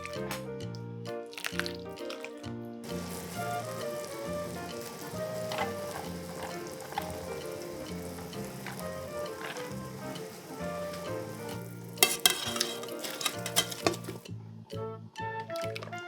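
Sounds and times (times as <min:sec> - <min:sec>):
background music: 0:00.0 - 0:16.0
food sizzling in a hot pan: 0:02.8 - 0:14.3
utensil clacking against pan: 0:02.9 - 0:14.3.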